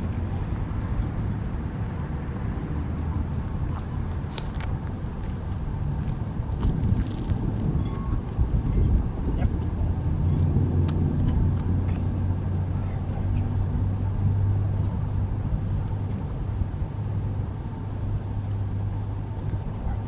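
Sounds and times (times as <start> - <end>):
vehicle engine humming: 0.0 - 20.0.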